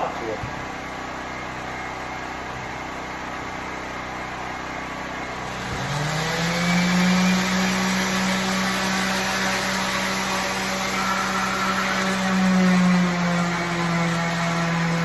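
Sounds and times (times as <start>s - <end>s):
electric sander grinding wood: 5.4s - 15.0s.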